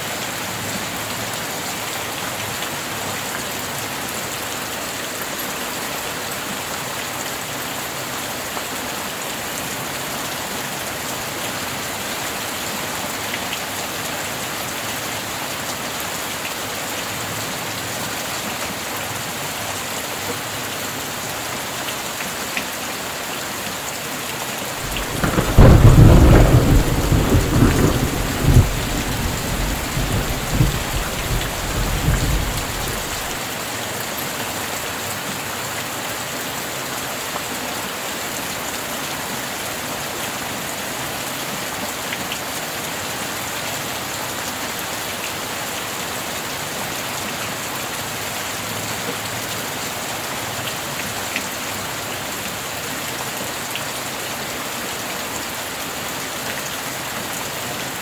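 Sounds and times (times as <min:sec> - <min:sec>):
steady rain falling: 0:00.0 - 0:58.0
thunder crack and rumble: 0:24.8 - 0:33.4.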